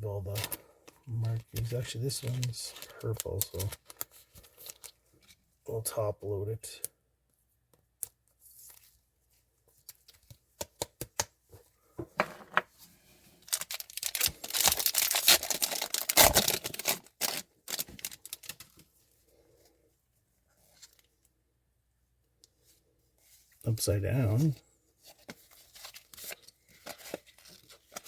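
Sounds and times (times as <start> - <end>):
plastic sleeves rustling: 0.0 - 6.0, 7.5 - 21.4, 22.4 - 28.0
cards clicking and tapping: 9.9 - 11.4.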